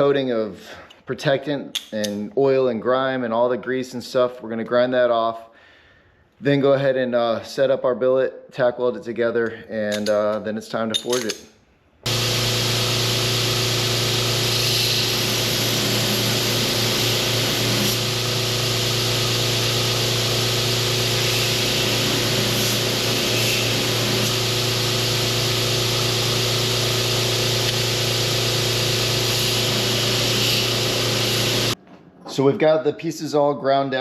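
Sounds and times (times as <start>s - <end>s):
grinder hum: 12.1s - 31.8s.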